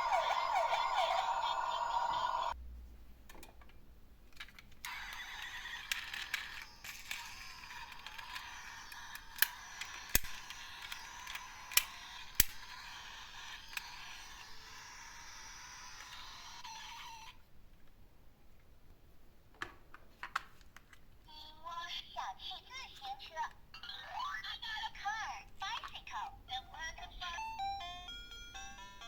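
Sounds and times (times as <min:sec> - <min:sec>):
toy siren: 0:00.0 - 0:02.6
toy cars rolling hiss: 0:04.9 - 0:16.6.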